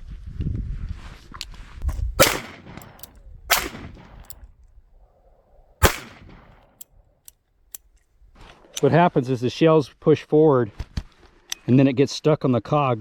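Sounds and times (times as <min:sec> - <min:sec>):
revolver gunshots: 0:01.9 - 0:04.3, 0:05.8 - 0:06.5.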